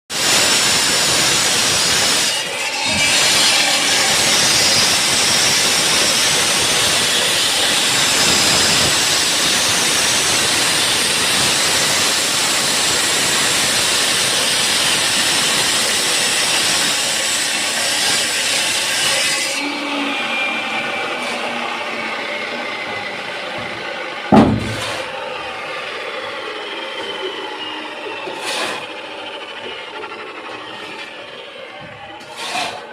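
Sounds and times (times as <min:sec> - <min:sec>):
saw grinding concrete: 0:00.1 - 0:32.9
saw blade whine winding down: 0:00.2 - 0:32.9
loud thud: 0:24.3 - 0:25.1.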